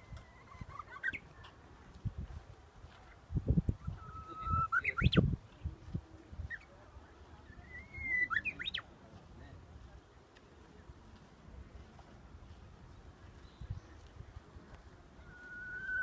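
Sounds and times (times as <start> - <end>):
bird singing whistled song: 0.1 - 1.2, 3.8 - 5.3, 7.4 - 8.9, 15.2 - 16.0.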